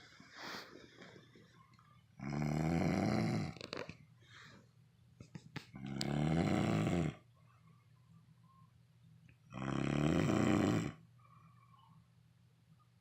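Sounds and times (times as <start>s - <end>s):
person snoring: 2.2s - 3.6s, 5.8s - 7.2s, 9.5s - 11.0s.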